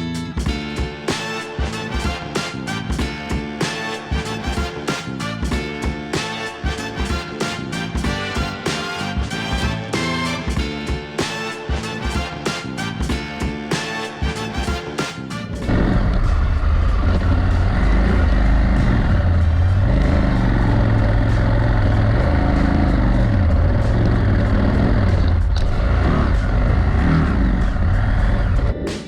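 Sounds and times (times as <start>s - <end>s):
motorcycle engine running: 15.6s - 28.8s
wind and road rumble: 15.6s - 28.8s.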